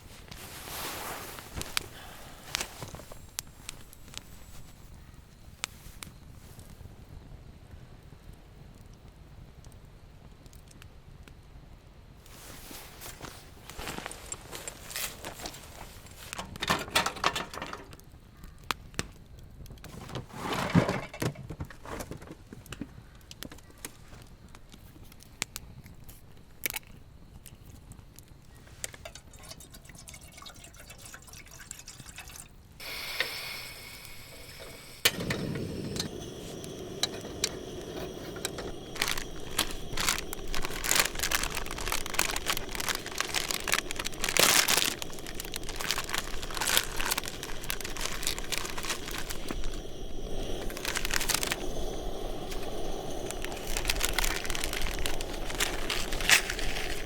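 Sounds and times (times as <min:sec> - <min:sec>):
rush of flames: 0:00.0 - 0:04.9, 0:32.8 - 0:57.0
campfire crackling and popping: 0:00.0 - 0:05.0, 0:32.8 - 0:57.0
brief hiss: 0:32.8 - 0:57.0.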